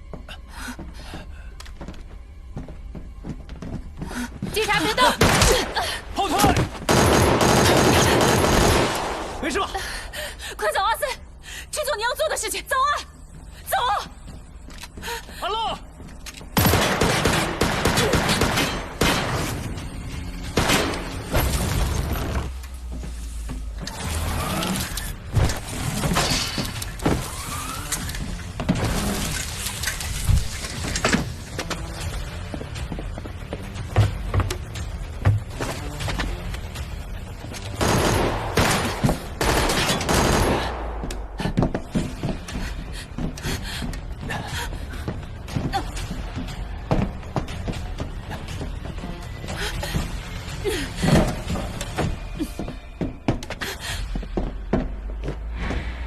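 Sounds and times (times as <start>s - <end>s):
rapid gunfire: 6.9s - 9.4s, 37.8s - 40.9s.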